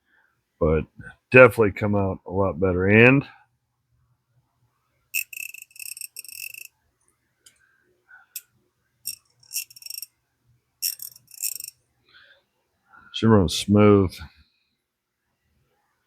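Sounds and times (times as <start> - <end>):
ratchet clicking: 5.2 - 6.7, 9.1 - 10.1, 10.8 - 11.7.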